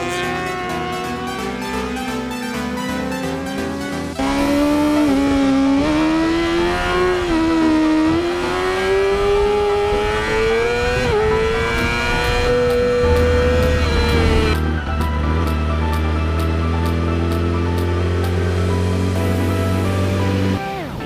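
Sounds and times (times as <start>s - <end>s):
motorcycle engine at high revs: 0.0s - 14.6s
background music: 0.0s - 21.0s.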